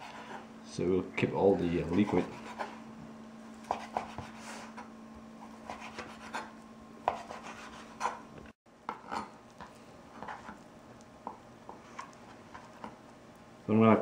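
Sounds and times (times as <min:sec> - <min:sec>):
knife tapping and scraping board: 0:03.6 - 0:04.9, 0:05.7 - 0:08.2, 0:08.9 - 0:10.6.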